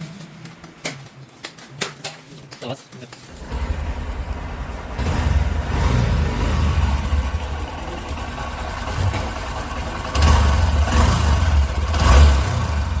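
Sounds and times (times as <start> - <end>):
motorcycle engine idling: 3.3 - 13.0.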